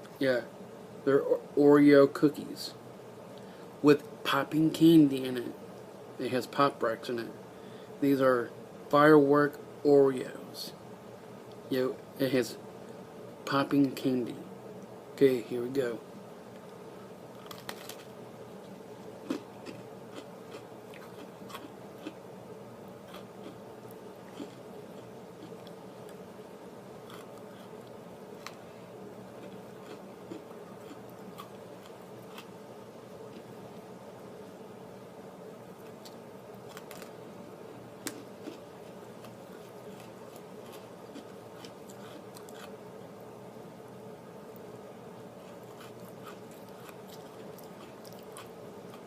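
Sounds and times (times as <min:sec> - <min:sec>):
faint steady hum: 0:00.0 - 0:49.0
cookie crunching while eating: 0:17.3 - 0:22.2, 0:23.0 - 0:26.2, 0:27.0 - 0:28.6, 0:29.3 - 0:32.6, 0:35.8 - 0:37.2, 0:38.0 - 0:42.8, 0:45.4 - 0:49.0.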